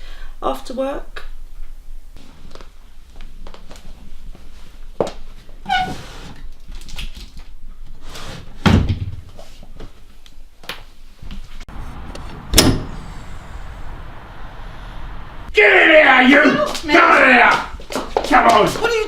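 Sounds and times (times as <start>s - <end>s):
door heavy thuds: 11.7s - 13.6s.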